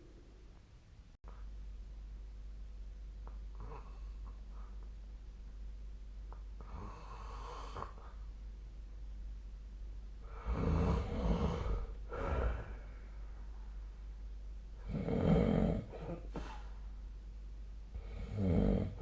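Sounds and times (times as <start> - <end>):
person snoring: 10.2 - 13.0, 14.8 - 16.6, 18.0 - 19.0.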